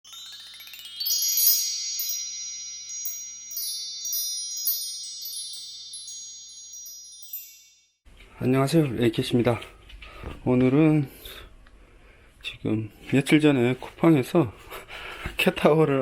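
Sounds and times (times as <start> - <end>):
chimes ringing: 0.0 - 8.0.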